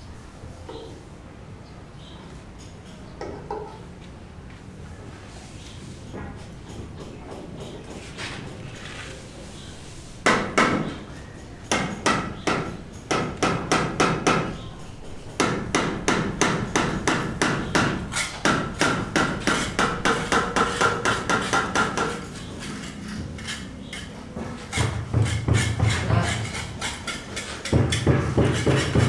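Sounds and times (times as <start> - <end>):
hammer striking: 10.3 - 11.0, 11.7 - 14.6, 15.4 - 22.3, 24.7 - 29.0.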